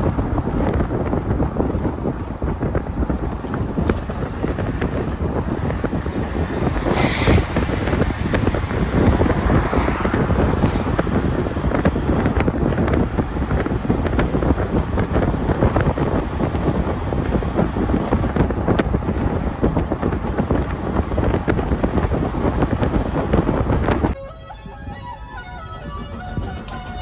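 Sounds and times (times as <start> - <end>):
wind buffeting microphone: 0.0 - 27.0.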